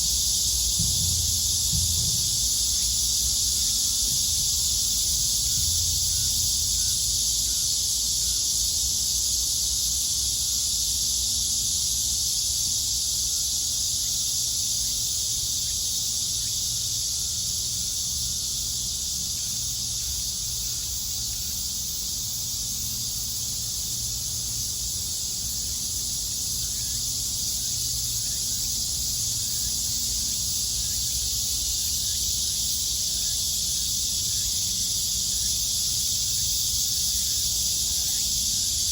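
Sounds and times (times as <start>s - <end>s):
faint low rumble: 0.0s - 7.6s
cicadas buzzing: 0.0s - 38.9s.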